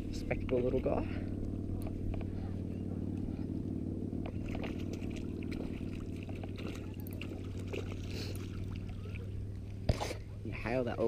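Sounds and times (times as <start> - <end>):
low hum: 0.0 - 11.0
water splashing and dripping: 4.3 - 9.2.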